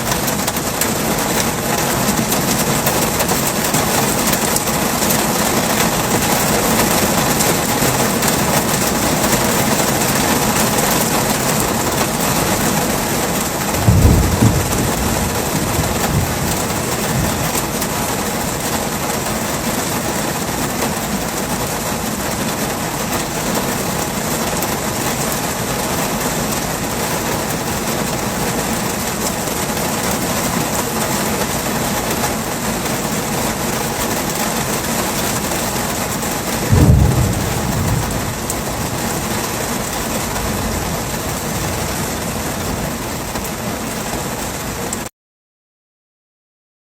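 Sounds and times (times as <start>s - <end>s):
heavy rain hissing: 0.0s - 45.1s
low thunder rumble: 12.8s - 18.2s, 36.6s - 43.4s.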